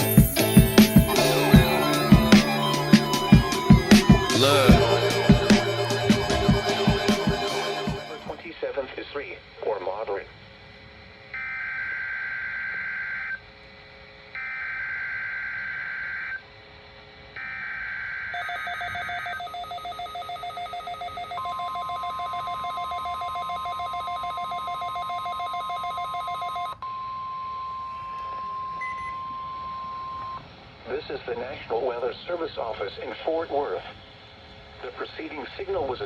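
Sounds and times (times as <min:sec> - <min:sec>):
screechy digital data bursts: 0:00.0 - 0:08.2, 0:18.4 - 0:26.4
rapidly pulsing electronic beep: 0:00.0 - 0:08.4, 0:18.4 - 0:30.4
steady warning alarm tone: 0:00.0 - 0:08.4, 0:10.9 - 0:30.5.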